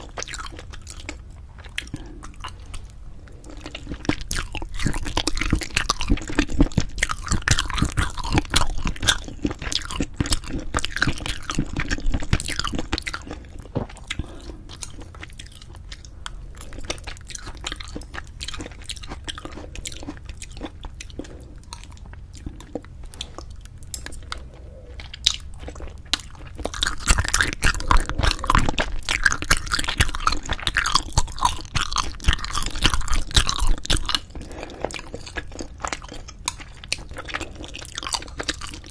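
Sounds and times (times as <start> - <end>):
biting and chewing food: 0.0 - 38.9.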